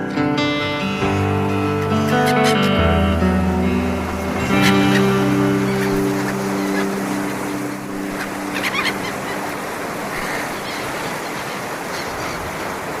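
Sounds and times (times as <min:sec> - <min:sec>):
background music: 0:00.0 - 0:10.2
sea waves washing on shore: 0:01.0 - 0:13.0
gull cries: 0:01.9 - 0:12.7.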